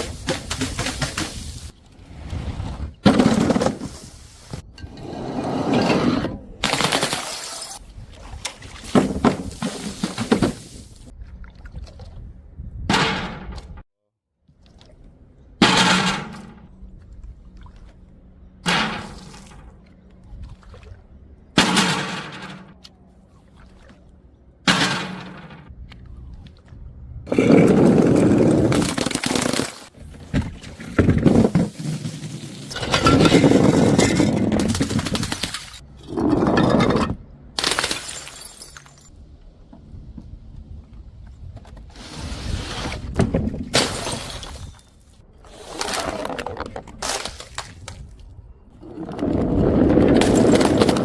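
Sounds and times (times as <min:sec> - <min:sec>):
glass bottles smashing: 0:36.5 - 0:39.1, 0:43.7 - 0:45.0.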